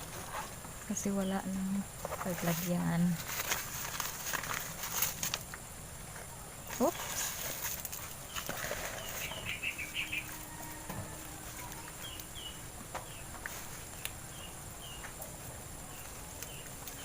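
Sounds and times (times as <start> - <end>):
faint low steady hum: 0.0 - 17.0
small bird chirping: 8.0 - 15.2, 15.8 - 17.0.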